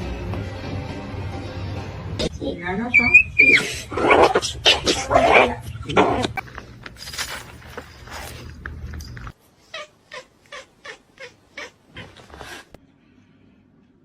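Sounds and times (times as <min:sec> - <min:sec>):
cat meowing: 0:09.7 - 0:12.7.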